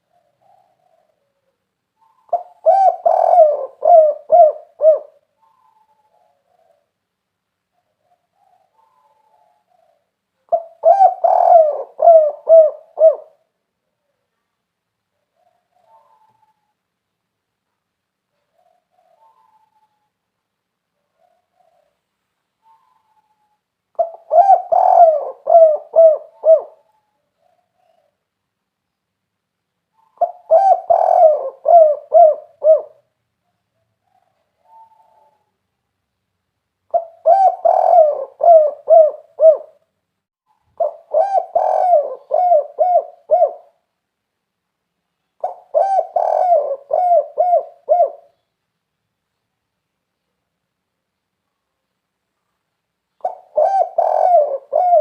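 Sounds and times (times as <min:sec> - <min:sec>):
dove cooing: 0:00.0 - 0:07.0, 0:07.7 - 0:14.2, 0:15.1 - 0:16.8, 0:18.3 - 0:20.1, 0:21.0 - 0:22.0, 0:22.6 - 0:28.2, 0:29.9 - 0:35.6, 0:36.9 - 0:39.9, 0:40.8 - 0:43.9, 0:45.4 - 0:48.5, 0:53.2 - 0:55.0.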